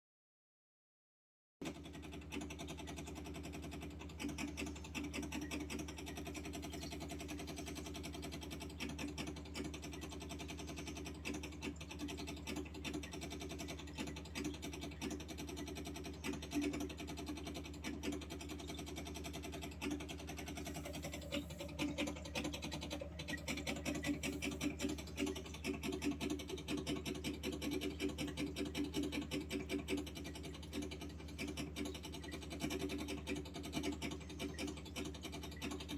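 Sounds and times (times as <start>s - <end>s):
fast buzzing rattle: 4.1s - 35.4s
water purifier humming: 4.9s - 15.6s, 19.4s - 31.9s.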